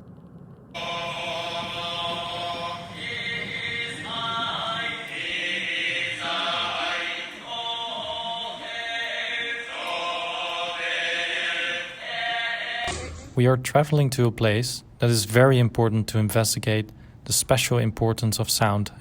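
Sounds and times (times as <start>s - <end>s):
buddhist chanting: 0.8s - 14.2s.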